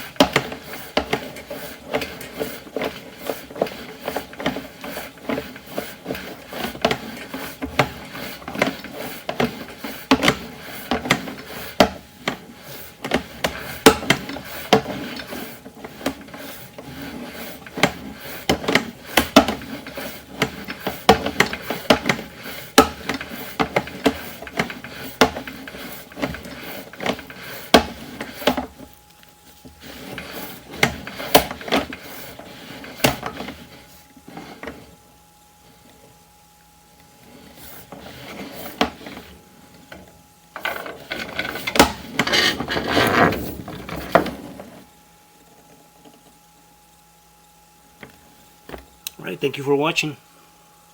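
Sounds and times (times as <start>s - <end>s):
cable knocking and scraping in pipe: 40.6s - 44.8s.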